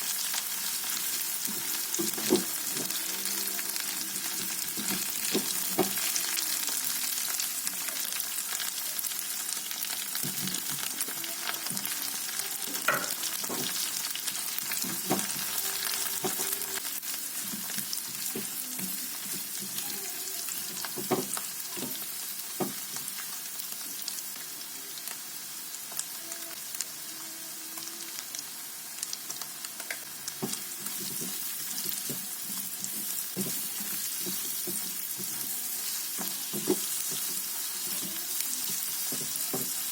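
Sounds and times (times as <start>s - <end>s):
food sizzling in a frying pan: 0.0s - 39.9s.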